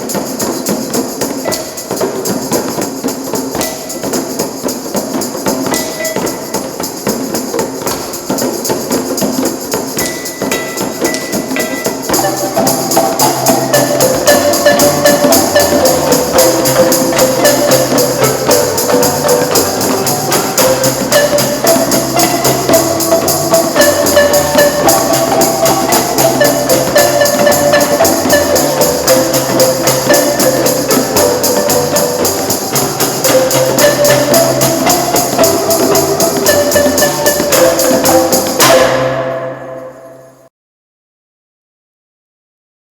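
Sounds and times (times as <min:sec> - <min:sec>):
fast rattling percussion: 0:00.0 - 0:40.4
marimba melody: 0:00.0 - 0:40.4.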